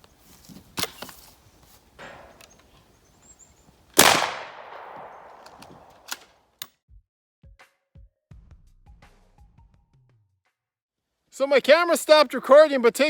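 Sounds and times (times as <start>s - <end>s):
shotgun shot with echo: 4.0s - 5.9s.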